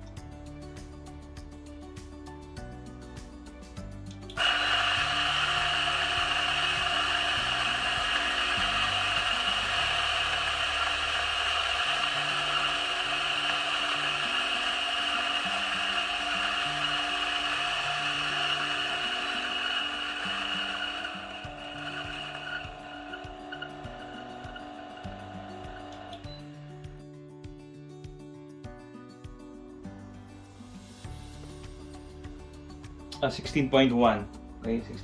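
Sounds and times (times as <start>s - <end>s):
coffee grinder motor whining: 4.2s - 27.0s.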